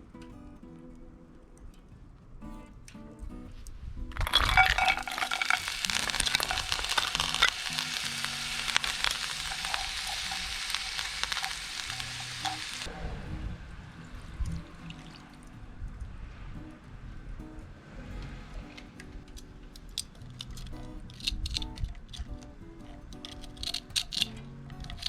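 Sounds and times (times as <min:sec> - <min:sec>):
food sizzling in hot oil: 0:04.2 - 0:12.9.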